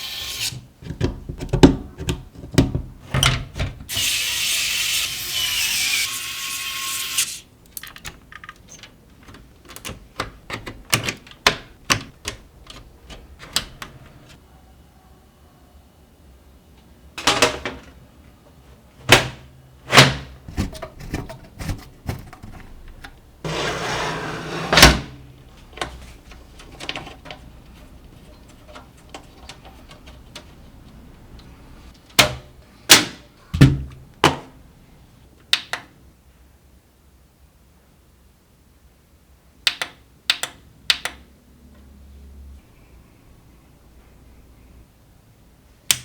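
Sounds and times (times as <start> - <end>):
clicks and knocks of hard parts: 7.7 - 14.4
scraping noise: 23.5 - 24.8.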